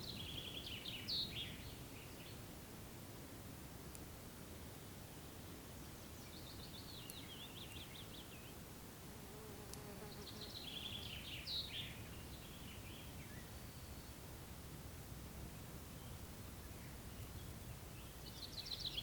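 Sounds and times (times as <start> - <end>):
songbird chirping: 0.0 - 2.5, 4.7 - 8.7, 9.7 - 14.6, 15.8 - 19.0
low outdoor rumble: 12.0 - 18.5.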